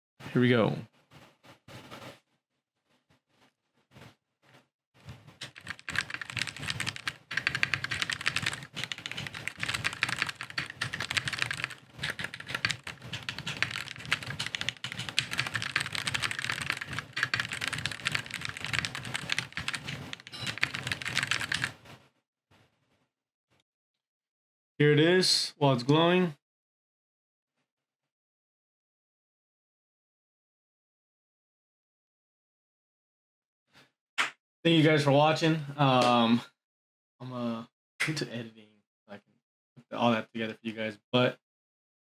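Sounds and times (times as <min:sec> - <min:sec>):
fast keyboard typing: 0:05.4 - 0:21.8.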